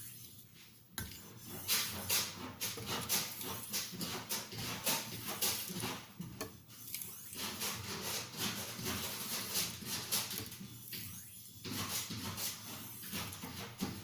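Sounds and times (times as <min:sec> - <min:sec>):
knife scraping on whetstone: 0:01.0 - 0:14.0.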